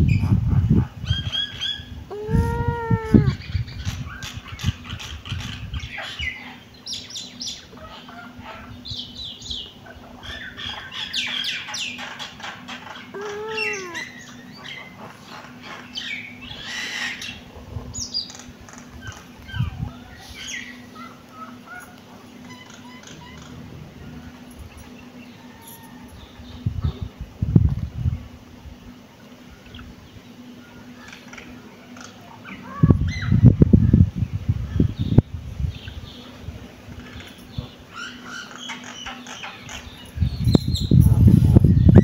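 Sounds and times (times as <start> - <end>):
kittens mewing: 2.0 - 3.5, 13.1 - 14.2.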